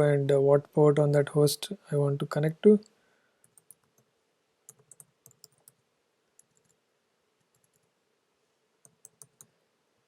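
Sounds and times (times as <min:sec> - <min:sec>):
faint computer keyboard clicks: 0:04.7 - 0:05.8, 0:08.8 - 0:09.5.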